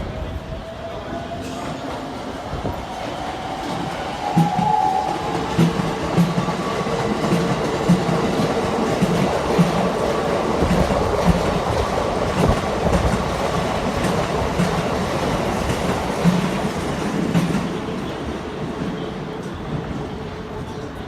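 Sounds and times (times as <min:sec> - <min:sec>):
electric train pulling out: 0:00.0 - 0:11.7
train wheels clacking over rail joints: 0:03.8 - 0:17.8.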